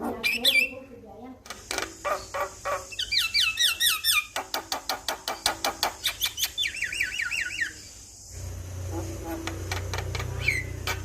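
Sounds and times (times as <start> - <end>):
bird whistling wavy notes: 6.1 - 8.0, 9.0 - 11.0.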